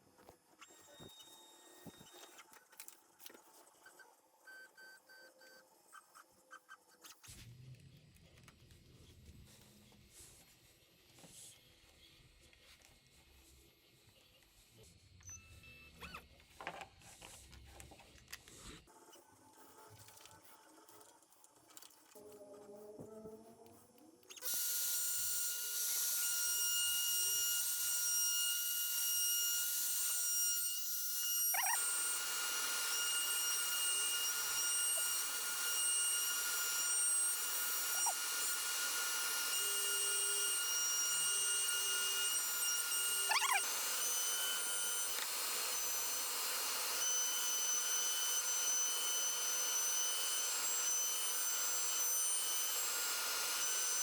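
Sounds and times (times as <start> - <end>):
shop vacuum motor whining: 24.3 - 54.0.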